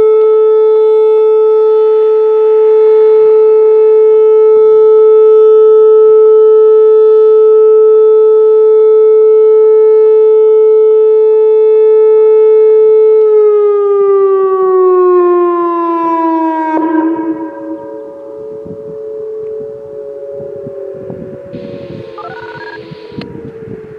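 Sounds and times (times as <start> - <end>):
distant sirens: 0.0 - 23.9
electronic warning siren: 13.0 - 23.9.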